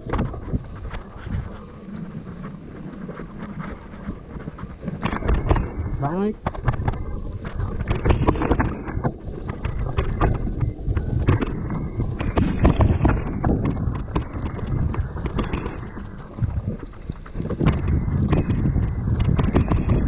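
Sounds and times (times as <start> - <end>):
wind buffeting microphone: 0.0 - 20.0
bike rattling and knocking: 4.9 - 20.0.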